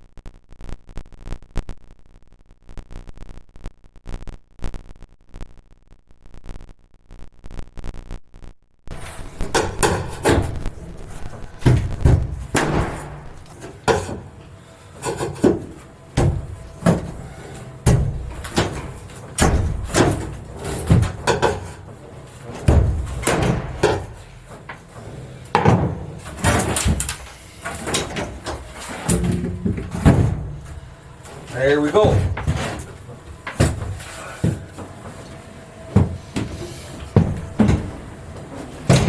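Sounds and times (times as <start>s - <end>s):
wooden panels knocking and banging: 8.9s - 39.0s.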